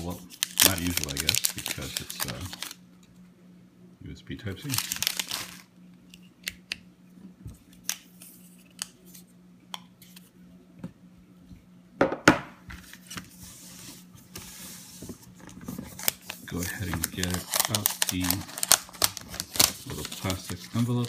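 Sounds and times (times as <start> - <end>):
packaging rustling: 0.0 - 2.8, 4.6 - 5.7, 15.4 - 21.0
packaging clattering: 0.4 - 2.8, 4.7 - 5.6, 15.9 - 21.0.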